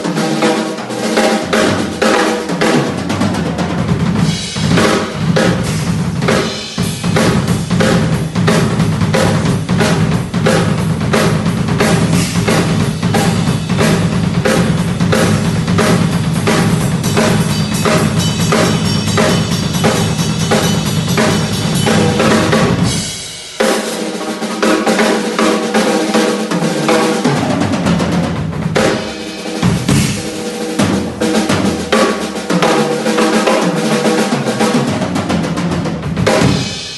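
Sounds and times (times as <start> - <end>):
bass drum strokes: 0.9 - 23.6, 27.4 - 32.8
snare drum strokes: 28.8 - 35.5.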